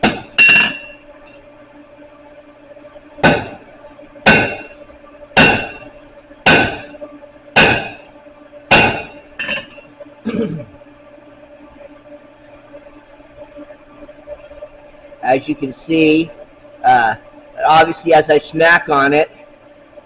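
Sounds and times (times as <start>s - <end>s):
hammer striking metal on anvil: 0.0s - 1.0s, 3.2s - 3.6s, 4.3s - 4.8s, 5.4s - 5.9s, 6.5s - 6.9s, 7.6s - 8.0s, 8.7s - 9.8s
low steady hum: 0.0s - 20.0s.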